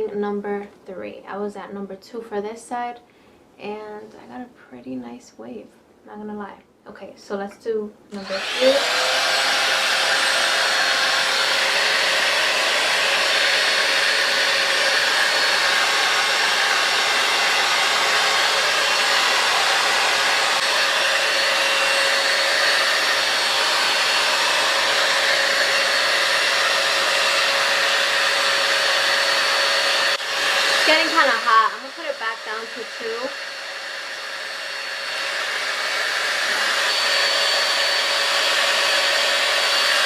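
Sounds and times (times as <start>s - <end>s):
hot-air styler blowing: 8.1s - 40.0s
motor whine: 8.2s - 40.0s.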